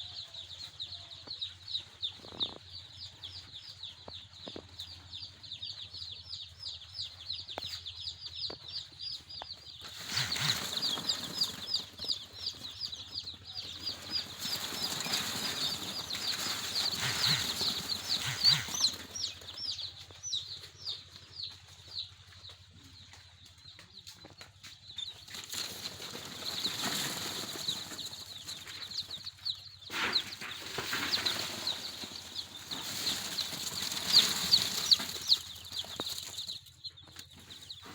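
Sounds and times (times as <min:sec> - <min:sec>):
chicks peeping: 0:00.0 - 0:37.9
rustling noise: 0:09.8 - 0:20.7, 0:25.2 - 0:36.6.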